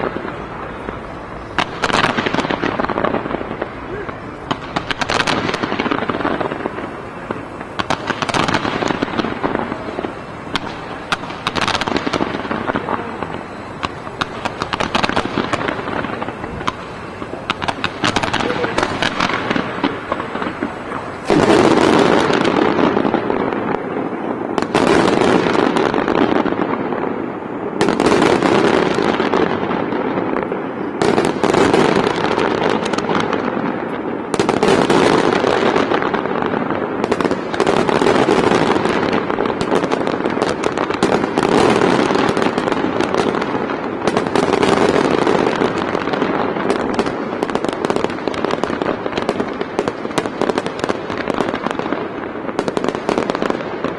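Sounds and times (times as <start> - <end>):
rapid small firework pops: 0.0 - 27.2, 27.8 - 53.9
firework shell bursts: 0.0 - 30.3.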